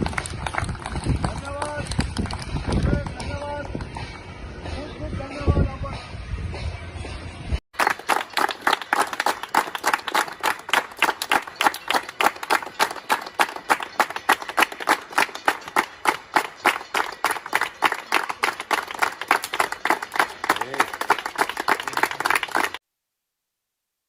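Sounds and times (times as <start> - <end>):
hands clapping: 0.0 - 4.2, 7.8 - 22.8.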